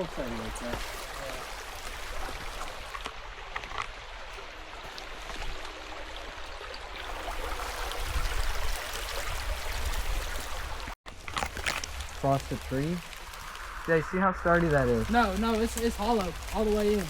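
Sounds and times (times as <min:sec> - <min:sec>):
creek water over rocks: 0:00.0 - 0:17.0
low rumble: 0:12.4 - 0:16.7.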